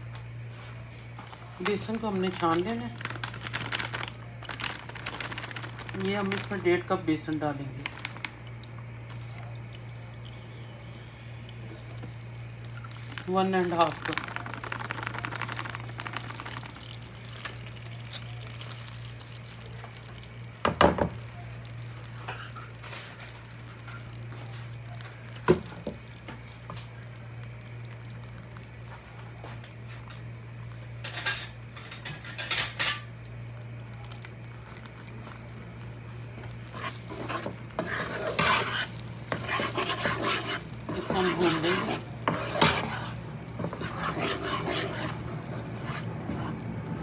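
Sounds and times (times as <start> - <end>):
steady low hum: 0.0 - 20.6, 21.2 - 47.0
utensil scraping pan: 36.7 - 46.7.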